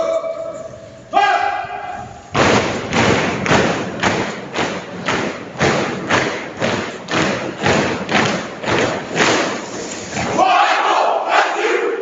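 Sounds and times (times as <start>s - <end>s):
troops stamping boots in unison: 2.4s - 10.4s.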